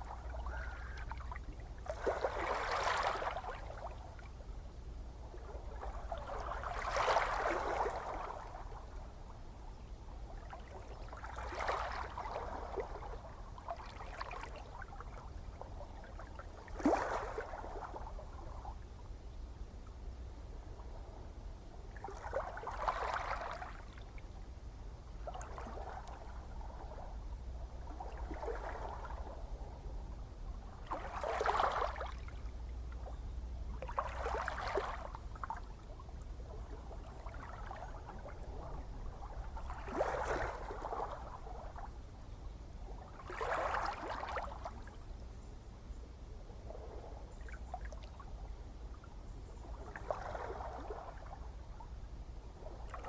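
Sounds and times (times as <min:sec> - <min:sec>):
ocean waves lapping and splashing: 0:00.0 - 0:04.5, 0:05.2 - 0:09.6, 0:10.2 - 0:18.8, 0:21.8 - 0:24.2, 0:25.1 - 0:33.1, 0:33.7 - 0:42.1, 0:42.8 - 0:45.0, 0:49.6 - 0:53.0
low rumble of sea: 0:00.0 - 0:53.0.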